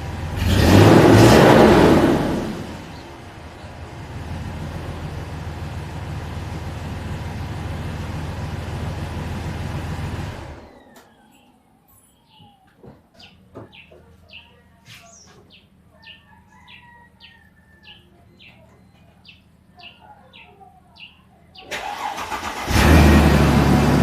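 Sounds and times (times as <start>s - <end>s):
car engine starting and running: 0.0s - 11.3s, 21.6s - 24.0s
small bird chirping: 11.0s - 21.8s.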